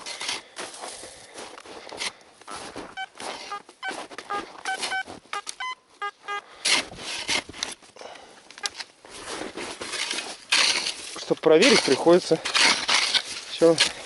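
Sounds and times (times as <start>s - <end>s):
scraping and crunching in snow: 0.0s - 5.3s, 6.6s - 8.0s, 9.0s - 14.0s
metal detector beeping: 2.5s - 6.4s.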